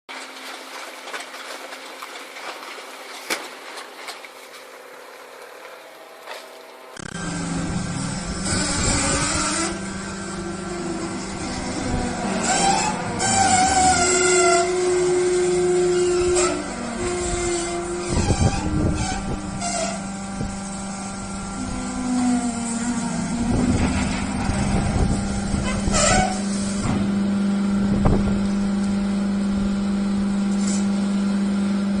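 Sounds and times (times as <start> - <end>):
baler motor and pump hum: 0.1 - 32.0
strained whine of press: 5.6 - 32.0.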